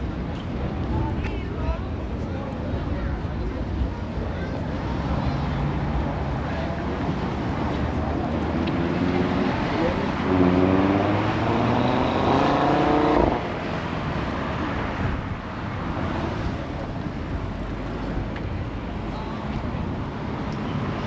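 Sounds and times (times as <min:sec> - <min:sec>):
street noise: 0:00.0 - 0:21.0
vehicle engine accelerating: 0:08.2 - 0:13.6.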